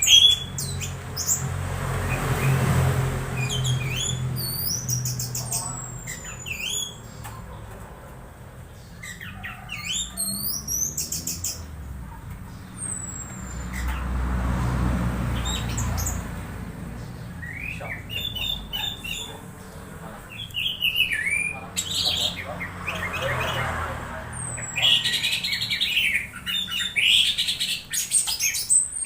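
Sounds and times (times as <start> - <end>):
thrush squeaky calls: 0.0 - 1.5, 3.3 - 7.6, 9.0 - 11.7, 15.3 - 16.3, 17.1 - 29.0.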